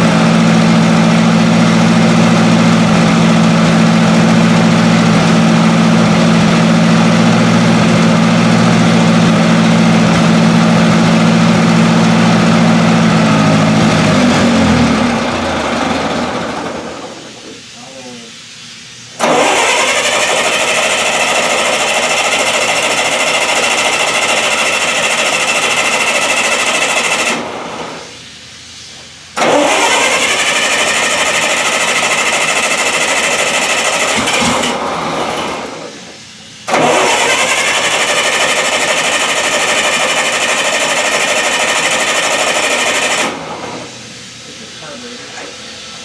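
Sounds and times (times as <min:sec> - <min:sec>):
starter motor cranking engine: 0:00.0 - 0:17.8, 0:19.2 - 0:28.1, 0:29.4 - 0:44.0.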